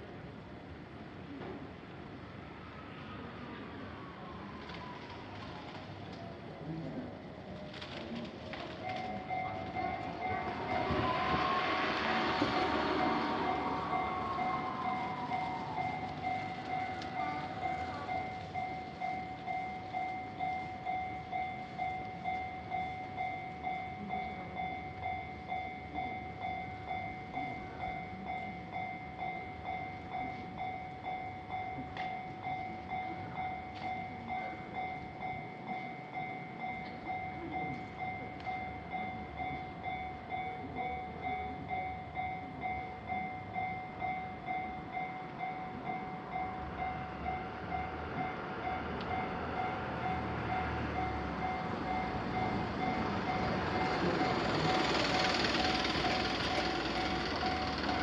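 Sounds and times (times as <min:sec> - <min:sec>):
level crossing warning bell: 0:08.5 - 0:58.0
rushing noise: 0:10.0 - 0:17.0.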